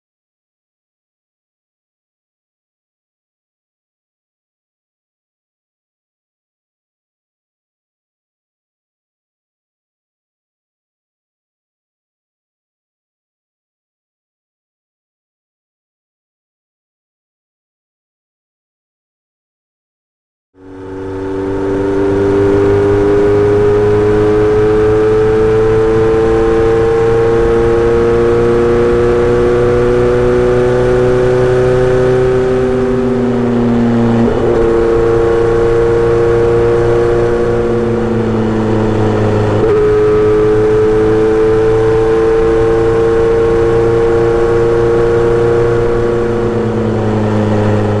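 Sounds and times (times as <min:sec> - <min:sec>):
motorcycle engine accelerating: 0:20.6 - 0:48.0.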